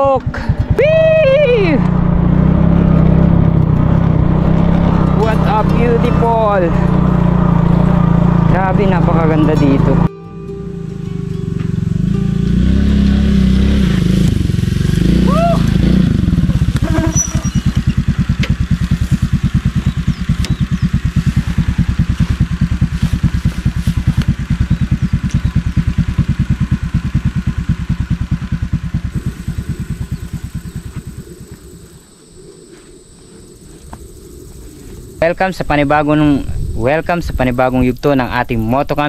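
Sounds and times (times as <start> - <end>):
motorcycle engine chugging: 0.0 - 32.2
crickets chirping drone: 16.0 - 39.0.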